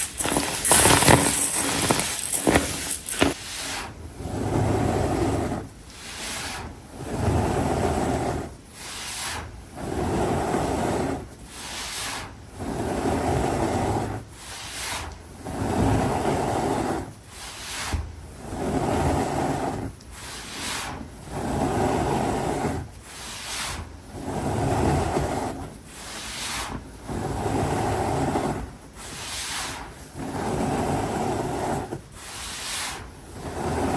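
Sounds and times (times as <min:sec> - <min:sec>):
squeaky crunching of blocks: 0:00.0 - 0:03.4.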